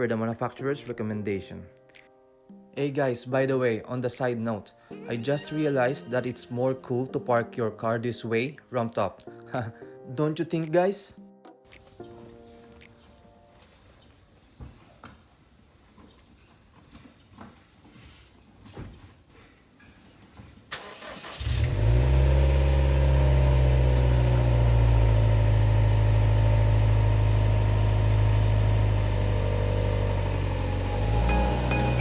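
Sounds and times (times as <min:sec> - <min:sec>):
car engine starting and idling: 0:20.7 - 0:32.0.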